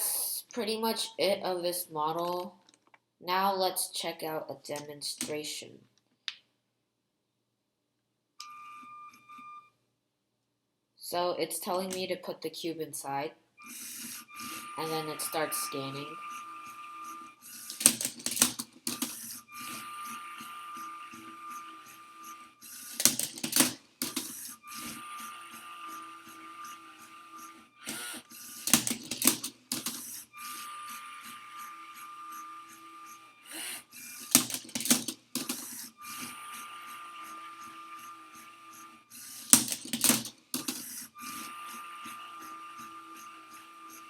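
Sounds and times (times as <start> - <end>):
motor whirring: 13.6 - 44.0
plastic clatter: 17.6 - 19.4, 22.8 - 24.6, 27.9 - 30.2, 34.1 - 35.9, 39.3 - 41.0.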